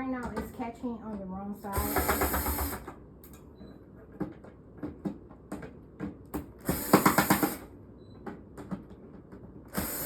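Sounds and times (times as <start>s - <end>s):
handheld power driver running: 1.7s - 2.9s, 6.6s - 7.7s, 9.7s - 10.0s
clicks and knocks of parts: 2.0s - 7.6s, 8.2s - 10.0s.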